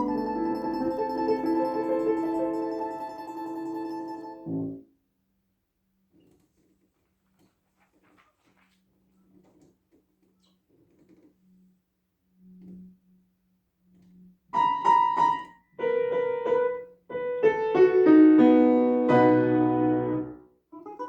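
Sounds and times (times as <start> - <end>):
piano chords: 0.0 - 4.8, 14.6 - 20.4.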